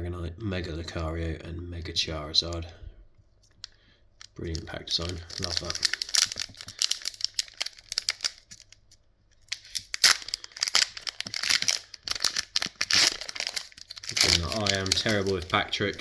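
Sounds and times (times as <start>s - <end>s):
foil wrappers crinkling: 3.5s - 16.0s.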